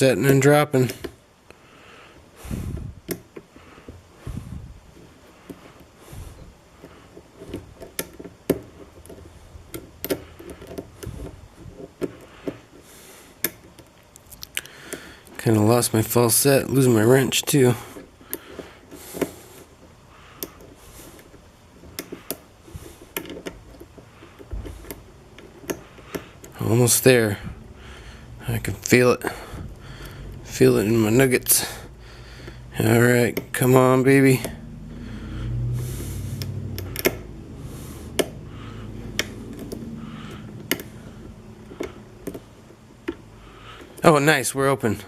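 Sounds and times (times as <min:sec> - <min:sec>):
lock pick clicking: 0:03.0 - 0:03.4, 0:07.4 - 0:11.2, 0:13.4 - 0:15.0, 0:20.4 - 0:22.5, 0:23.1 - 0:26.6, 0:36.4 - 0:37.3, 0:39.1 - 0:43.2.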